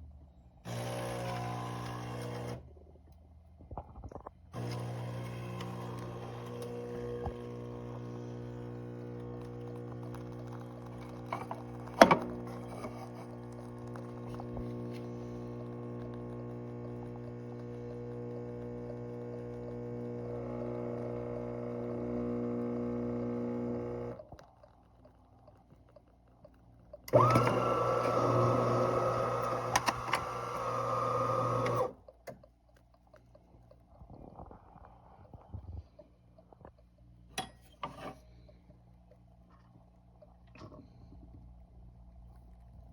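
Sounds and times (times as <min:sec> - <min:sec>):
espresso machine buzzing hum: 0:00.7 - 0:02.6, 0:04.6 - 0:24.2, 0:27.1 - 0:32.0.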